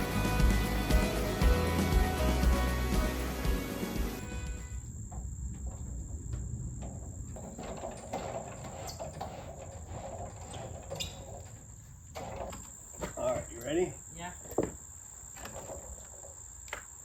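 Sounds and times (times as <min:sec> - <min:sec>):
background music: 0:00.0 - 0:04.8
faint outdoor background noise: 0:00.0 - 0:17.0.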